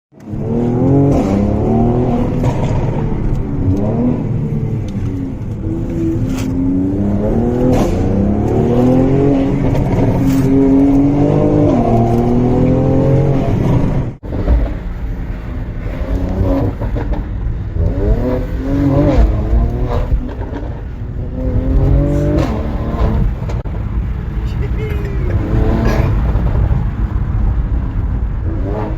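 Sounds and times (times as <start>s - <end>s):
exhaust pops and crackles: 0.1s - 6.6s, 14.2s - 28.9s
engine revving: 0.2s - 27.4s, 28.2s - 28.9s.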